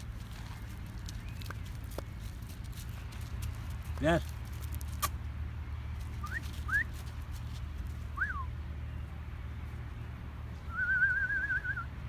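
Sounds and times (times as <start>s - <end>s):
person whistling: 10.7s - 11.9s.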